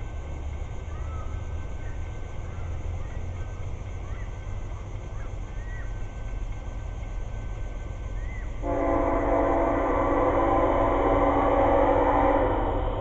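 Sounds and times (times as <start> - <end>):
train rumble: 0.0 - 13.0
train horn: 8.6 - 13.0.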